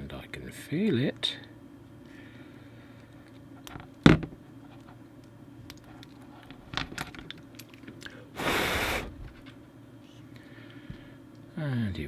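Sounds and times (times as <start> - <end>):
burst of hiss: 8.4 - 9.2.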